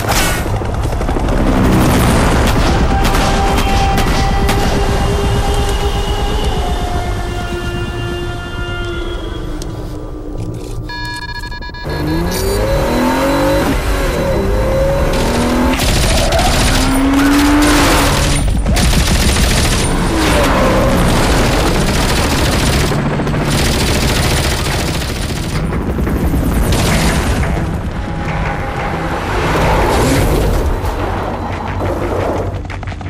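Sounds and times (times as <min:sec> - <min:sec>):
car engine revving: 0:11.8 - 0:18.6
automatic gunfire: 0:15.1 - 0:25.6.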